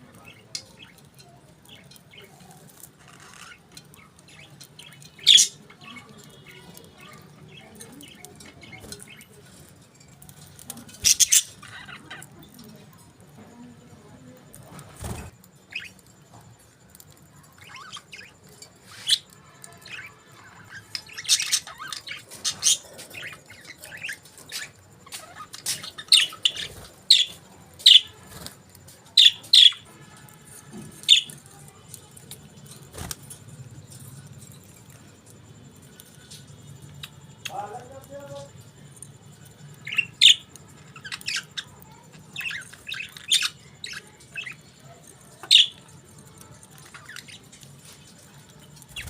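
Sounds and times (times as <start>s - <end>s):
budgerigars chirping: 11.0s - 12.3s, 45.4s - 45.8s.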